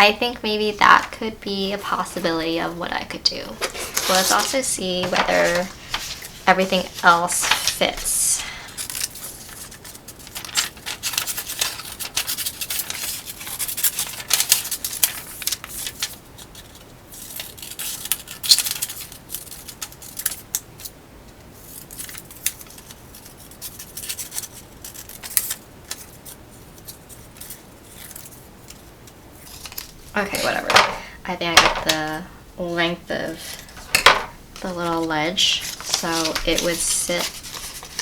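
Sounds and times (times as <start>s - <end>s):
scissors cutting paper: 3.6s - 20.9s, 21.7s - 30.8s, 34.6s - 38.0s.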